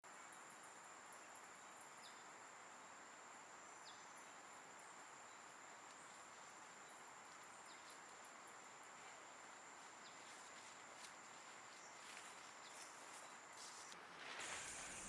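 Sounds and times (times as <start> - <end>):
soft hiss: 0.2 - 15.0
short insect chirps: 12.7 - 15.0.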